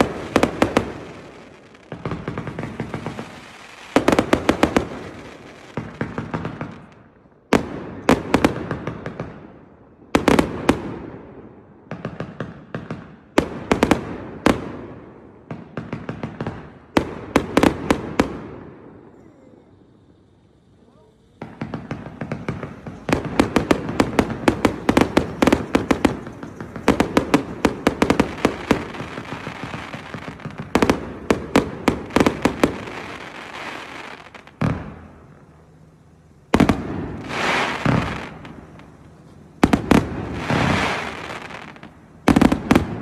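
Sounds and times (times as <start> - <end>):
fireworks hiss: 0.0 - 7.0, 19.6 - 43.0
fireworks bangs: 0.0 - 43.0.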